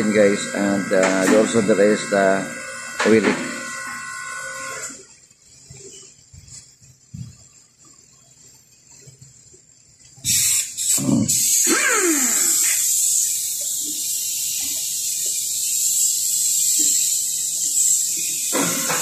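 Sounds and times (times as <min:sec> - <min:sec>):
loud spraying hiss: 0:10.2 - 0:19.0.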